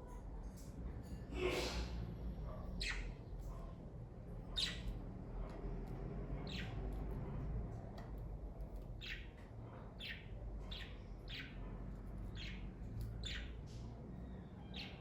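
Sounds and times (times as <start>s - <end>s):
budgerigars chirping: 10.0s - 11.6s, 12.3s - 13.6s, 14.6s - 15.0s.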